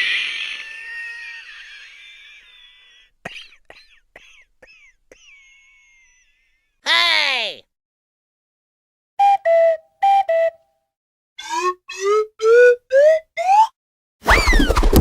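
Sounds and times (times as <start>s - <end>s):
cartoon whistle toots: 9.2s - 10.6s, 11.4s - 13.7s, 14.3s - 14.8s.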